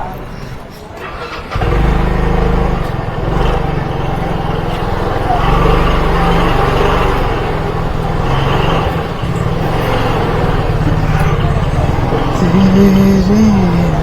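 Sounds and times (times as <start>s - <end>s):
motorcycle engine: 0.0s - 14.0s
road noise: 0.0s - 14.0s
man singing: 11.0s - 14.0s.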